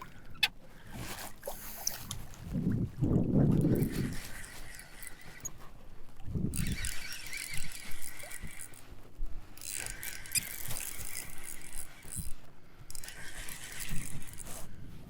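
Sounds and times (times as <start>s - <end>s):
fishing reel winding and clicking: 3.4s - 5.7s, 6.3s - 9.0s, 9.6s - 14.8s.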